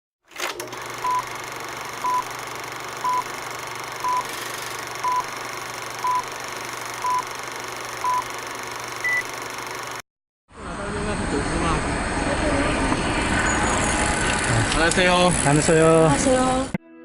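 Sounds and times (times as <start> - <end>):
short electronic beeps: 2.0 - 2.3, 3.0 - 3.3, 4.0 - 4.3, 5.0 - 5.3, 6.0 - 6.3, 7.0 - 7.3, 8.0 - 8.3, 9.0 - 9.3
higher-pitched beep: 9.0 - 9.3.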